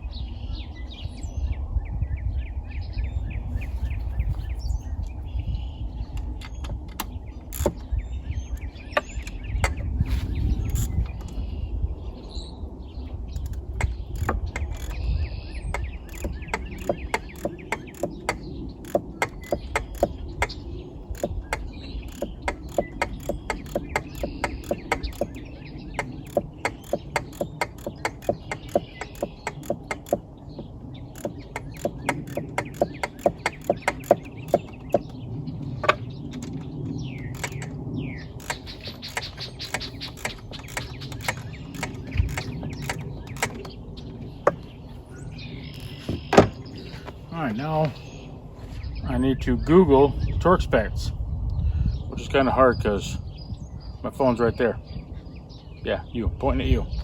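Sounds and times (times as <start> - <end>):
socket ratchet clicking: 13.4 - 15.1, 15.8 - 25.4, 26.0 - 35.1, 37.3 - 37.8, 38.4 - 43.8.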